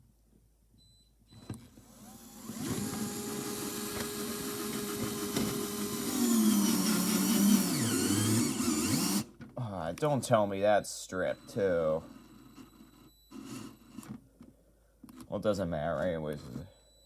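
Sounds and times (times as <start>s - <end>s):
power drill motor whine: 1.3s - 9.3s, 11.2s - 14.1s.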